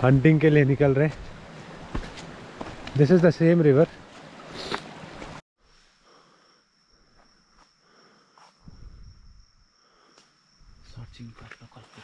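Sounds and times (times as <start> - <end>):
crickets trilling: 5.6 - 12.0.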